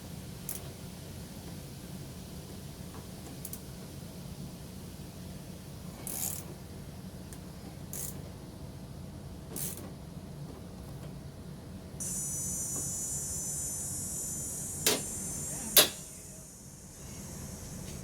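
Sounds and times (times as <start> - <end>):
ratchet wrench clicking: 6.0 - 6.5, 7.9 - 8.2.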